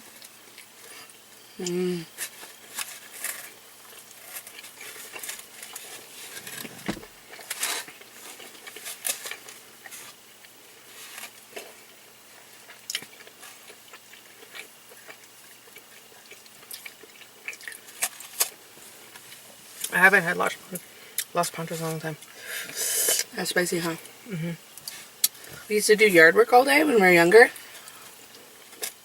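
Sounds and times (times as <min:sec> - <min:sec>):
people chewing food: 0:00.0 - 0:23.3, 0:23.9 - 0:25.7, 0:27.5 - 0:29.0
small clicks and crackles: 0:02.2 - 0:06.7
low thump: 0:06.5 - 0:07.2.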